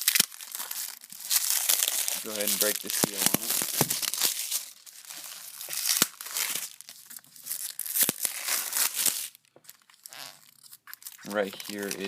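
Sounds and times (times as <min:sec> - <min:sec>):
wrapping crinkling and tearing: 0:00.0 - 0:12.0.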